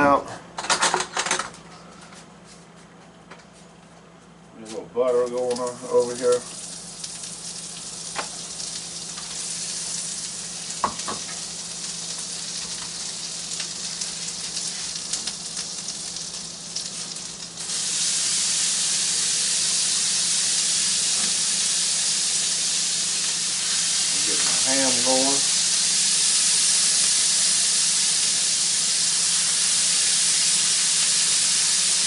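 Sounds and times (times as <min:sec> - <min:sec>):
butter sizzling on a griddle: 0:05.8 - 0:32.0.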